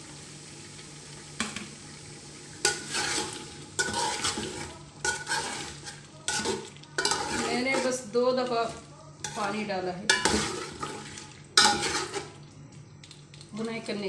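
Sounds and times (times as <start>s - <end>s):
hot oil sizzling: 0.0s - 14.0s
spoon scraping a pot: 2.6s - 12.4s.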